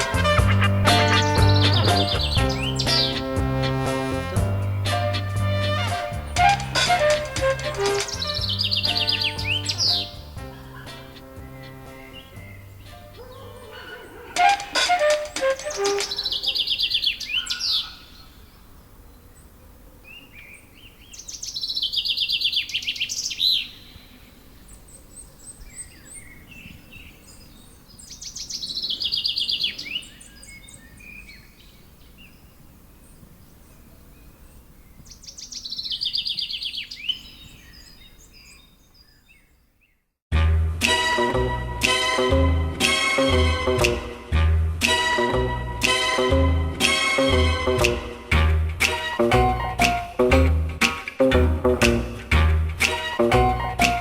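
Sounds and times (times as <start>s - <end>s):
songbird trilling: 0.4s - 3.8s, 7.8s - 18.4s, 24.7s - 32.5s, 34.2s - 39.5s.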